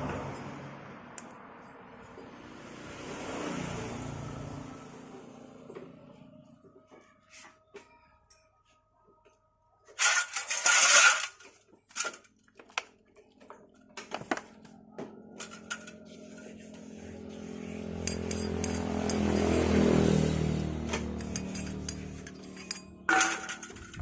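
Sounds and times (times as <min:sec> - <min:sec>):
metal parts and tools clinking: 0:09.9 - 0:12.6, 0:15.4 - 0:16.1, 0:17.8 - 0:19.8, 0:20.7 - 0:24.0.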